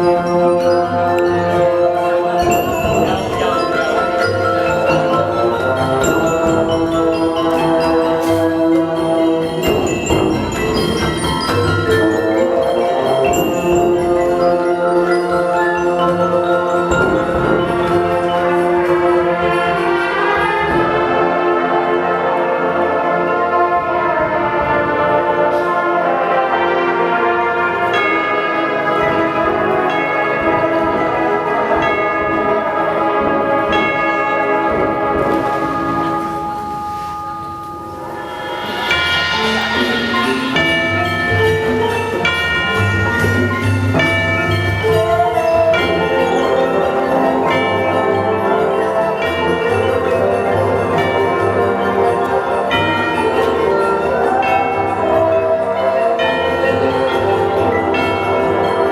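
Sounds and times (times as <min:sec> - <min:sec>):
mallet percussion notes: 0:00.0 - 0:58.9
sustained pitched tones: 0:34.9 - 0:43.4.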